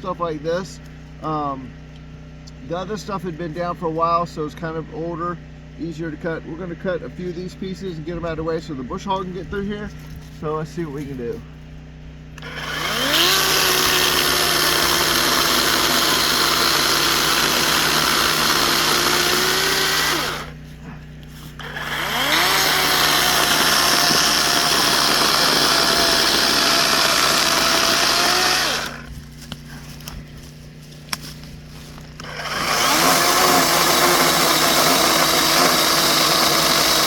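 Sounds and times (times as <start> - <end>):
cordless chainsaw cutting wood: 12.4 - 30.2, 31.0 - 37.0.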